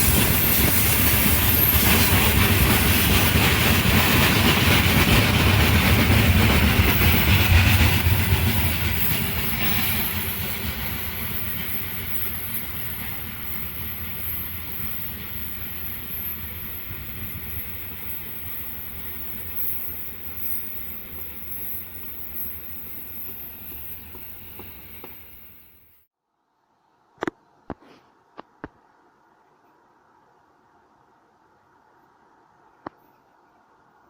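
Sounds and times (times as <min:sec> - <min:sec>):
freight train wheels clattering: 0:00.0 - 0:25.9.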